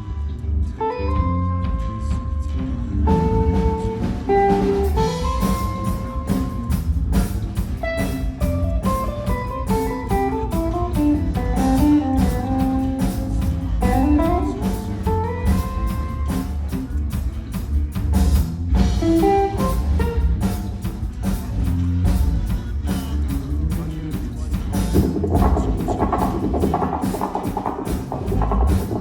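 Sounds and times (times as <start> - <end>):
electric guitar lead lines: 0.0 - 18.1, 18.7 - 29.0
bass guitar: 0.0 - 29.0
drum kit beat: 3.1 - 29.0.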